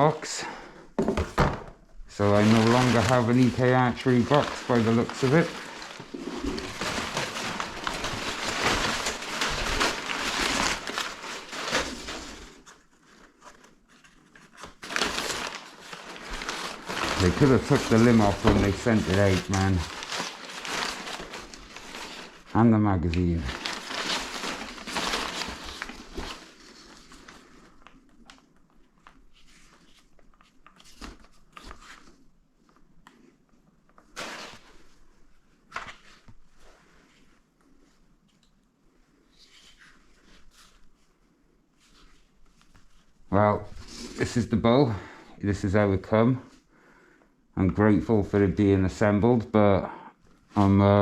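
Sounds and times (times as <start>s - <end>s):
cardboard box rustling: 2.3s - 22.5s, 23.4s - 27.3s.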